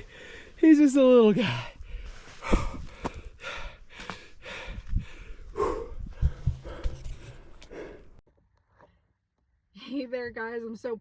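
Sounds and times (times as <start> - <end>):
man breathing hard: 0.0 - 0.6, 1.4 - 8.2.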